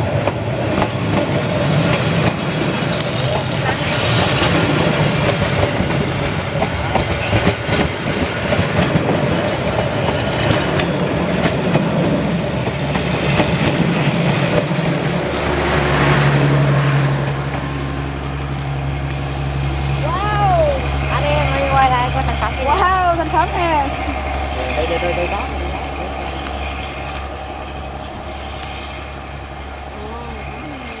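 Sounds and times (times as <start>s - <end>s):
train wheels clattering on rails: 0.0s - 17.8s
low engine hum: 12.0s - 31.0s.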